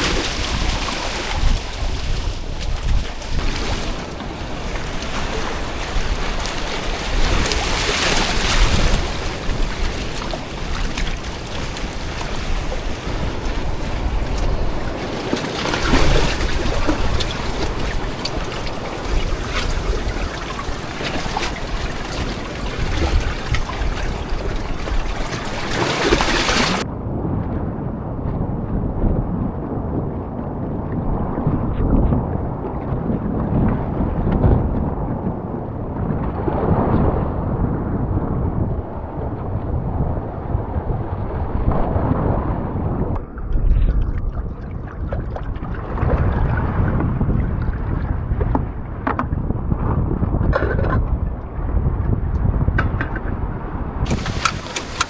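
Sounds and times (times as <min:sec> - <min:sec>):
wind and waves rushing: 0:00.0 - 0:55.0
muffled low rumble: 0:26.8 - 0:54.8.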